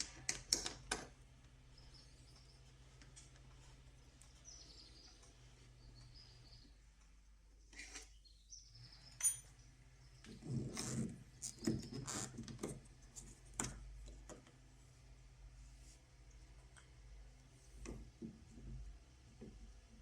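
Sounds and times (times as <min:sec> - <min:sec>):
faint bird chirps: 0:01.7 - 0:02.8, 0:04.2 - 0:06.8, 0:07.6 - 0:10.4.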